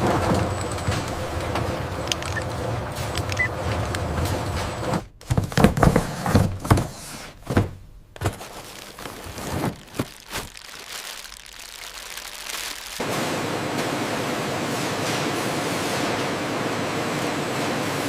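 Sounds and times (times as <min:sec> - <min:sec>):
irregular thuds and knocks: 0:03.8 - 0:08.6.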